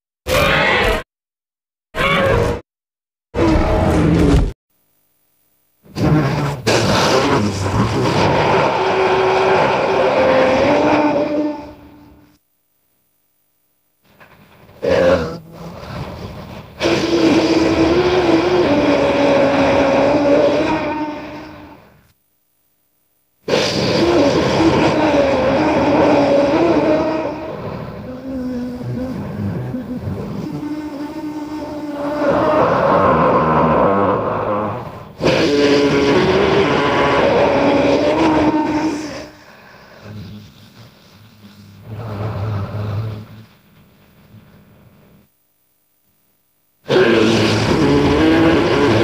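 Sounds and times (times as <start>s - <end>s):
creature roar: 0.3s - 1.1s, 2.0s - 2.6s, 6.0s - 12.2s, 14.8s - 16.0s, 16.8s - 21.8s, 23.5s - 40.6s, 41.8s - 43.4s, 46.9s - 49.0s.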